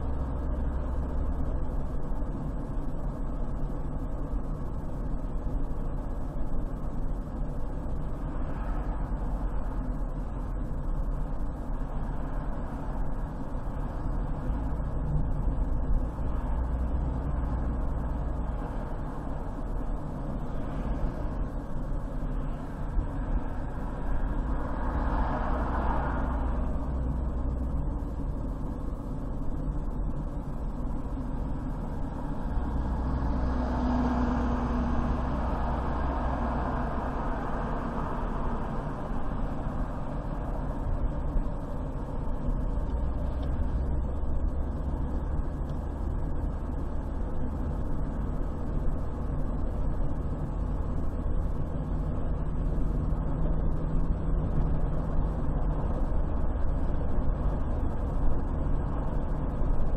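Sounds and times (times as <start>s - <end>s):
car engine rumble: 0.0s - 59.9s.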